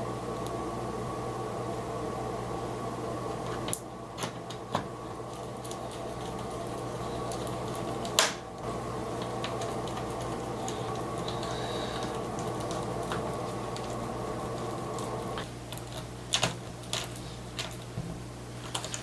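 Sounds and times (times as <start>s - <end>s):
steady low hum: 0.0s - 19.0s
small parts clicking and tapping: 14.9s - 18.0s, 18.6s - 19.0s.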